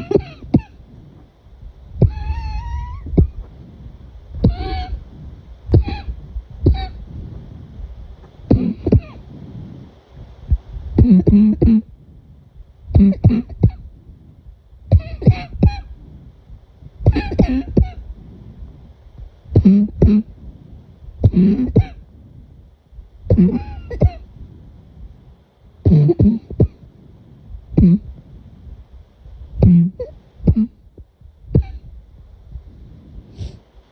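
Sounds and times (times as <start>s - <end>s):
person coughing: 5.8s - 6.1s, 13.0s - 13.8s, 17.1s - 17.8s, 23.3s - 24.2s.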